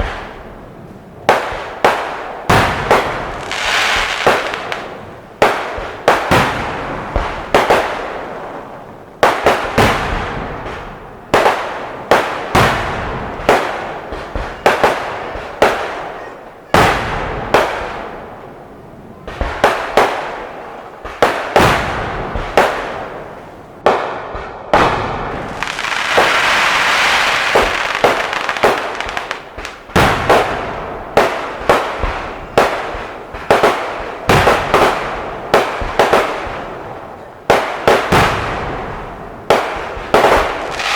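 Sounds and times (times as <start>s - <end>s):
fireworks bursting with bangs: 0.0s - 40.9s
hissing crackle: 25.4s - 29.9s.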